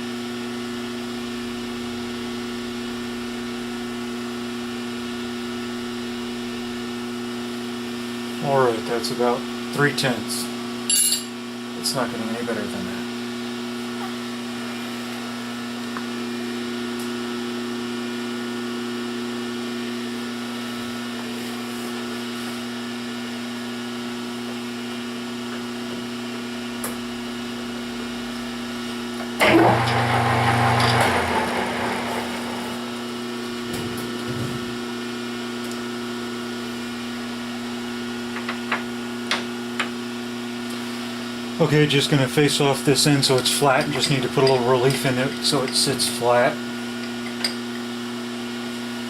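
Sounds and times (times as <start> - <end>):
metal lathe motor hum: 29.2 - 33.6.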